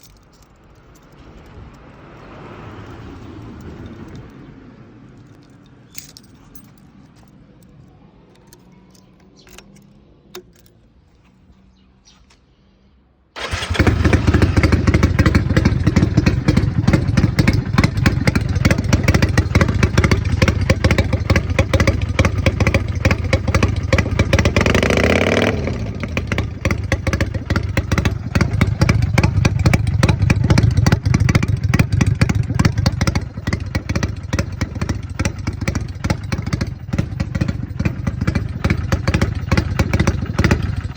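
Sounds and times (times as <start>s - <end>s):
motorcycle engine running: 13.4s - 40.9s.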